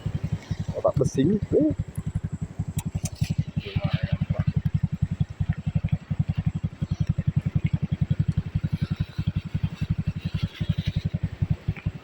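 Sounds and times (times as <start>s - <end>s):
small engine running: 0.0s - 12.0s.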